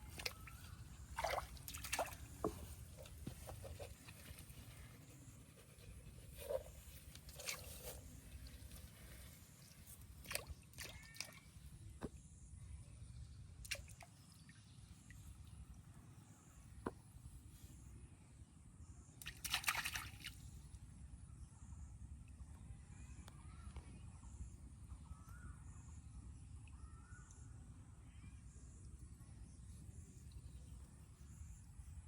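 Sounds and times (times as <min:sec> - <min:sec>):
river water splashing: 0:00.0 - 0:03.2, 0:19.3 - 0:20.4.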